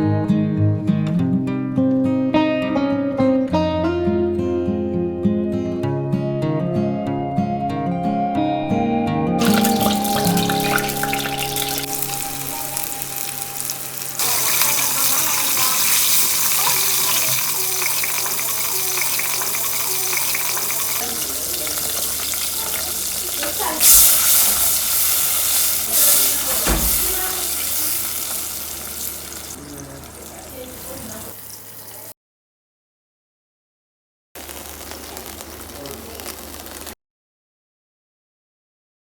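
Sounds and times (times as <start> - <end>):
stirring in a pan: 9.4 - 32.0
potatoes sizzling in oil: 9.4 - 32.1, 34.4 - 37.0.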